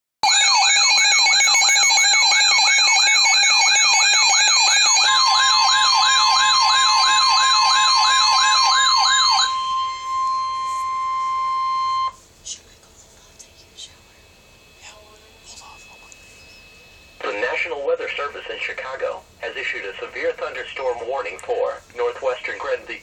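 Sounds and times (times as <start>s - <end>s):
electronic siren yelping: 0.2s - 12.2s
steady single-pitch alert tone: 0.2s - 12.2s, 14.0s - 18.3s
high warbling tones: 2.2s - 12.2s, 13.8s - 18.4s.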